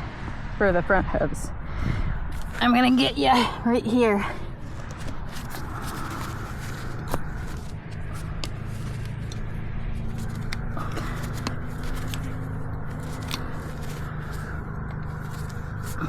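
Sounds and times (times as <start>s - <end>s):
steady low hum: 0.0s - 16.0s
hoof nippers clicking and scraping: 4.7s - 16.0s.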